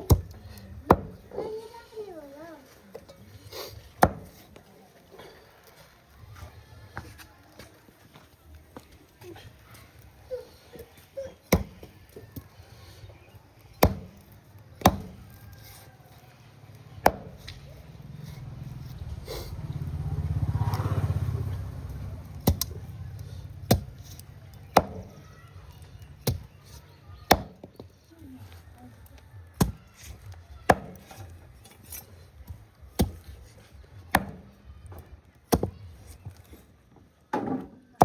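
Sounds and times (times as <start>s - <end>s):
heavy blade chopping: 0.0s - 1.2s, 4.0s - 4.5s, 11.5s - 11.9s, 13.8s - 15.5s, 17.0s - 17.6s, 22.4s - 22.8s, 23.6s - 25.2s, 27.3s - 27.7s, 29.6s - 33.4s, 34.1s - 34.5s, 35.5s - 36.4s.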